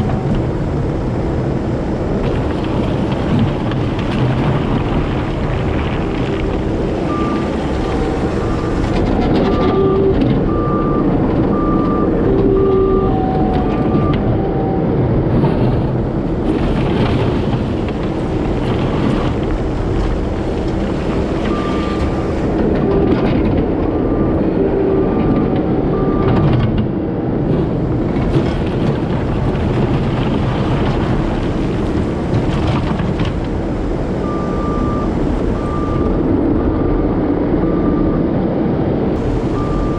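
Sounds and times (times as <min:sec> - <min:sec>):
heavy diesel machine running: 0:00.0 - 0:39.9
back-up alarm beeping: 0:07.0 - 0:14.9, 0:21.4 - 0:22.3, 0:34.2 - 0:36.2, 0:39.2 - 0:39.9.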